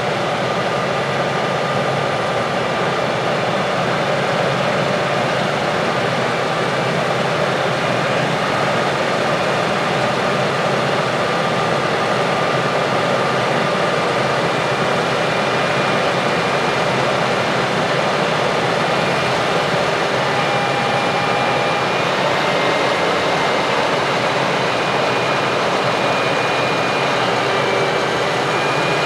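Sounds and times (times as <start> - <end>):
heavy farm machinery running: 7.2 - 29.0.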